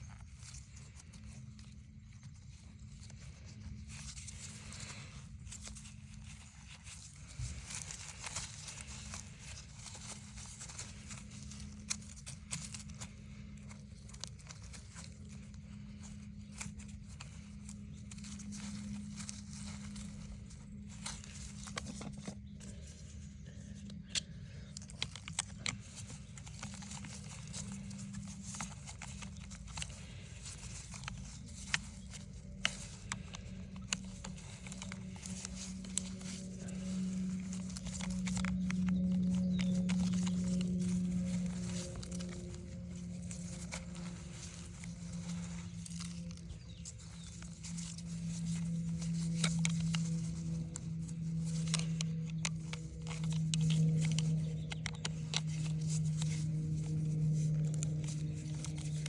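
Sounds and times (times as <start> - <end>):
steady low hum: 0.0 - 59.0
hands handling tools clicks: 7.0 - 59.0.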